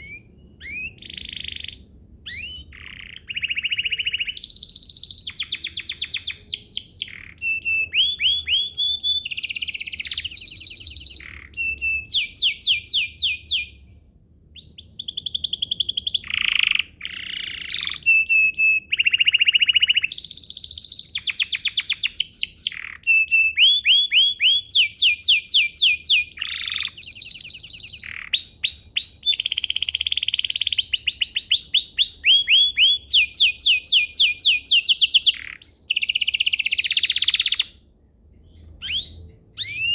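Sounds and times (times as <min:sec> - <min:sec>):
canary singing trills: 0:00.0 - 0:13.9, 0:14.6 - 0:37.9, 0:38.5 - 0:39.9.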